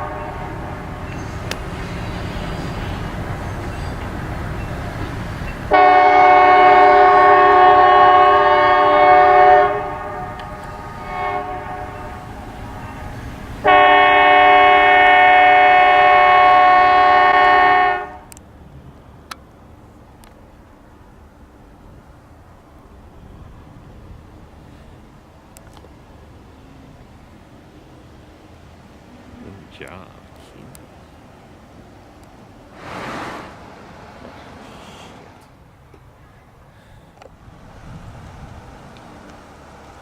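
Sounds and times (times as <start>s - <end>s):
train horn blasts: 0.0s - 4.0s, 5.7s - 18.4s
passing train rumble: 0.0s - 40.0s.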